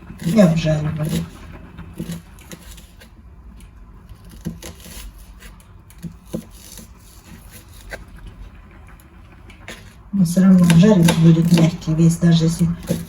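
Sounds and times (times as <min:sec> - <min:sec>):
faint steady background noise: 0:00.0 - 0:13.0
utensils knocking on wood: 0:10.7 - 0:11.8.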